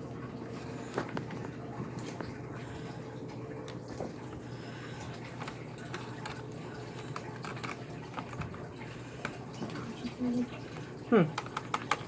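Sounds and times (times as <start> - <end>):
plastic parts clicking: 11.4 - 12.0.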